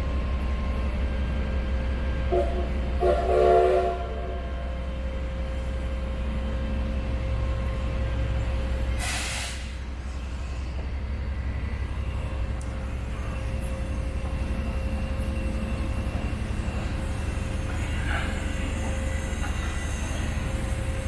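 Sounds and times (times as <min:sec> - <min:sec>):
train rumbling: 0:00.0 - 0:21.0
steam locomotive whistle: 0:02.3 - 0:04.4
steam hiss: 0:08.9 - 0:10.5.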